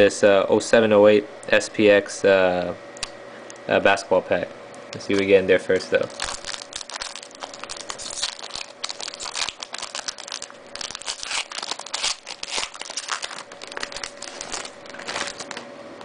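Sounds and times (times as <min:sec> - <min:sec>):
card pack wrapper crinkling and tearing: 0:06.0 - 0:15.7.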